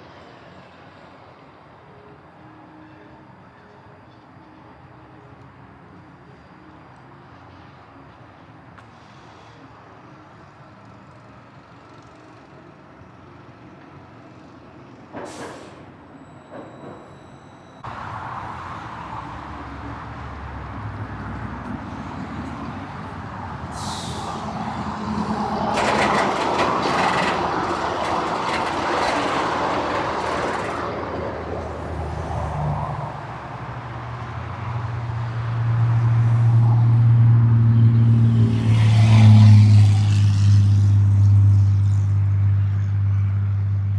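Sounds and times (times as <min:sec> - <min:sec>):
roller coaster rumbling on track: 0:17.8 - 0:41.0.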